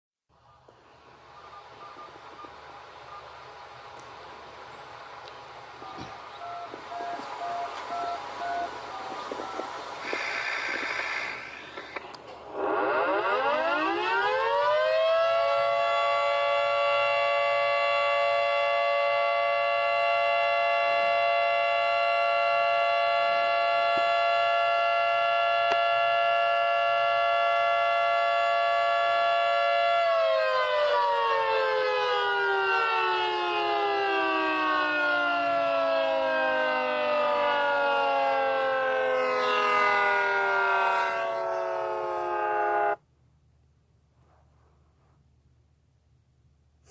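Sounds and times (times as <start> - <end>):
short beeps: 5.8 - 9.7
warning siren winding: 6.4 - 43.0.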